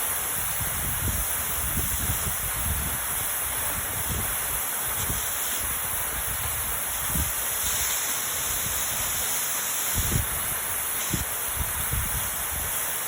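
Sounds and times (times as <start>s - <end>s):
wind buffeting microphone: 0.5s - 7.4s, 10.0s - 12.7s.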